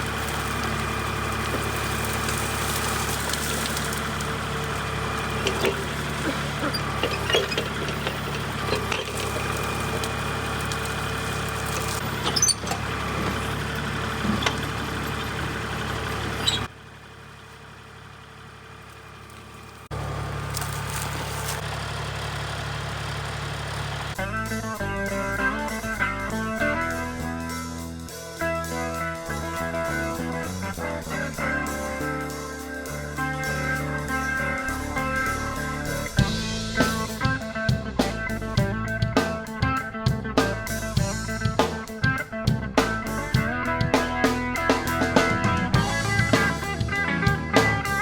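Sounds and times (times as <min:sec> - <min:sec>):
bucket clanking and scraping rocks: 0:00.0 - 0:16.7
tractor diesel engine running: 0:00.0 - 0:48.0.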